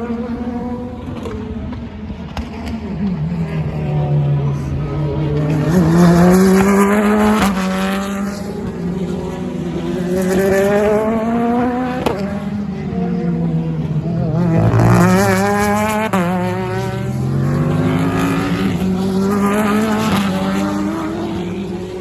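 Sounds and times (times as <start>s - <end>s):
race car engine accelerating: 0.0s - 22.0s.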